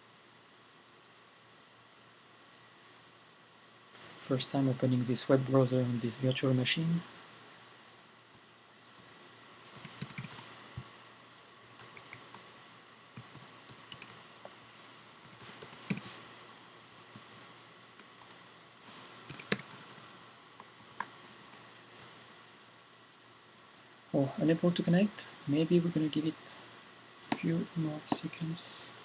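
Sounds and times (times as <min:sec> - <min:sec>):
keyboard typing: 0:09.7 - 0:10.5, 0:11.7 - 0:12.4, 0:13.2 - 0:14.2, 0:15.2 - 0:16.2, 0:16.9 - 0:17.4, 0:18.0 - 0:18.4, 0:19.3 - 0:20.0, 0:20.6 - 0:21.6.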